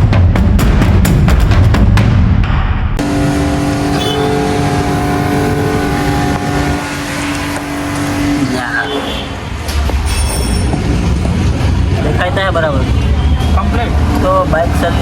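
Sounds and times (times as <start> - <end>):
long steady tone: 3.0 - 9.6
short rising whine: 3.0 - 10.6
road traffic engine rumble: 3.0 - 15.0.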